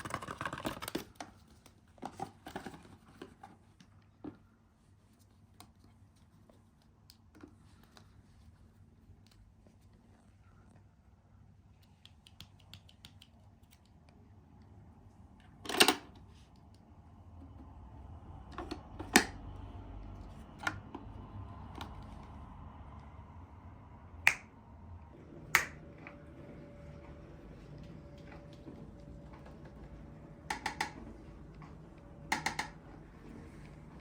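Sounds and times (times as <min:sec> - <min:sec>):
low steady hum: 0:01.1 - 0:34.0
sharp clicks and knocks: 0:30.4 - 0:32.8.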